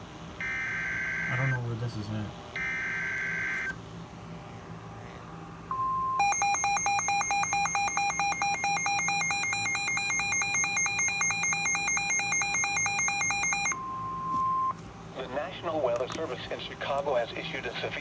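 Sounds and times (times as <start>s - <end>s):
two-tone alert signal: 5.7s - 14.7s.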